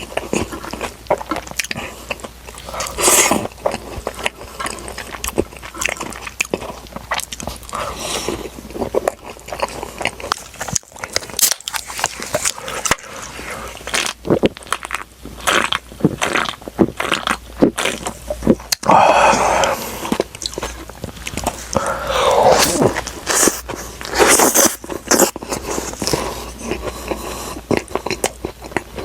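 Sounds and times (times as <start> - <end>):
person chewing crunchy food: 0.0 - 29.0
mouth sounds: 15.5 - 26.8.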